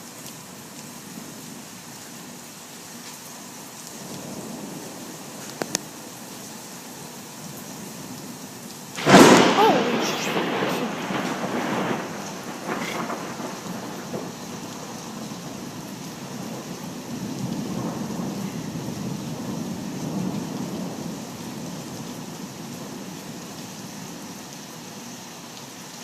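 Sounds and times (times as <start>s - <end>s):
steady rain: 0.0s - 26.0s
lightning crack: 9.0s - 16.6s
thunder rumbling: 9.0s - 23.4s.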